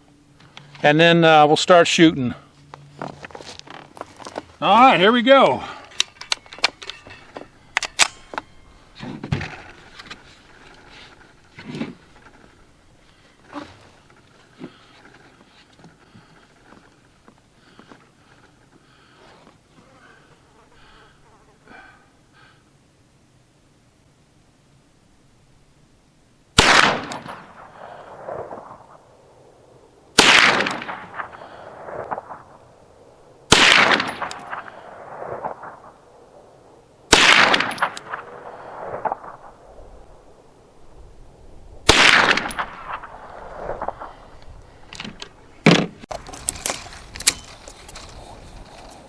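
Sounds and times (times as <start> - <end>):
gun mechanism clicks: 7.7 - 8.4
gunshots with echo: 26.6 - 29.0, 30.1 - 32.6, 33.5 - 36.0, 37.1 - 39.6, 41.8 - 44.2.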